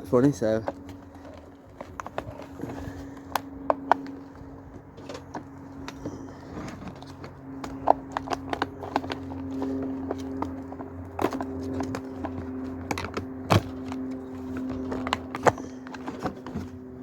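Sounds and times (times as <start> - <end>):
steady low hum: 0.0 - 17.0
plastic parts clicking and knocking: 5.0 - 16.7.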